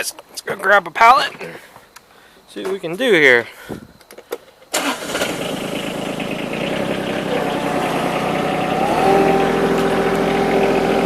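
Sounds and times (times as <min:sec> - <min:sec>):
diesel tractor engine running: 0:04.8 - 0:11.0.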